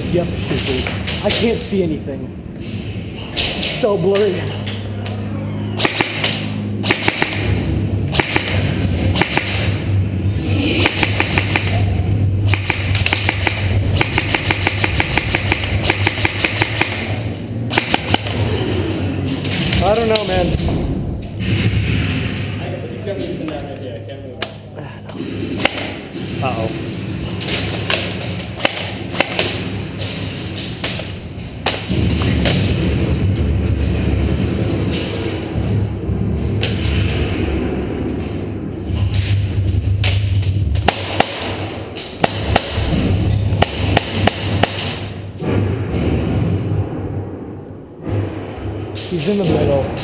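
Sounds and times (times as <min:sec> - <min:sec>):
low hum: 0:00.0 - 0:50.0
low rumble: 0:00.0 - 0:50.0
airsoft guns firing: 0:05.8 - 0:10.0, 0:10.7 - 0:18.4, 0:25.5 - 0:26.2, 0:27.4 - 0:32.8, 0:40.0 - 0:45.2.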